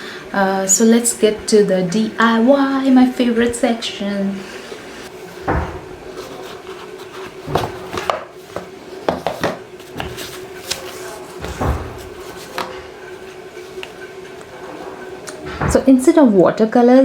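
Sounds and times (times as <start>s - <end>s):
faint steady hum: 0.0s - 17.0s
objects knocking on a work surface: 7.4s - 10.2s.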